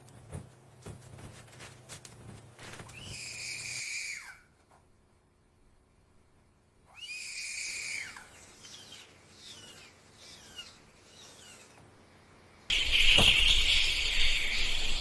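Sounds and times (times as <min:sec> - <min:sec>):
loud steady hissing noise: 0:12.2 - 0:15.0.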